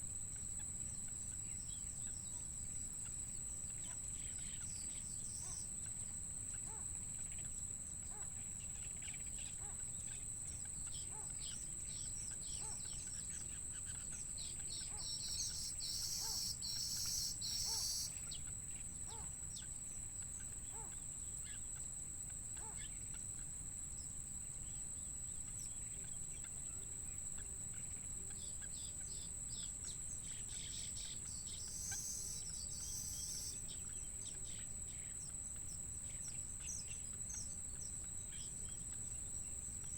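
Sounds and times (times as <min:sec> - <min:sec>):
birds chirping: 0:10.8 - 0:18.4, 0:29.6 - 0:34.4.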